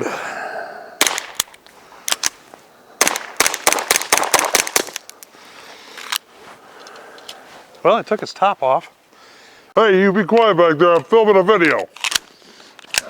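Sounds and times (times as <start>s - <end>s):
suppressed pistol shots: 1.0s - 1.5s, 3.0s - 5.0s.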